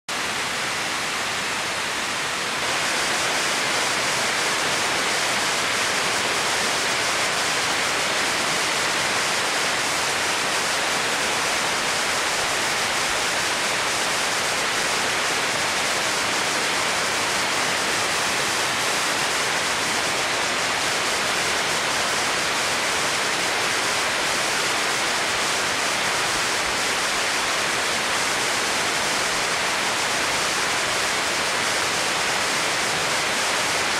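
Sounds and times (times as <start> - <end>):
waterfall rushing: 0.1 - 33.9.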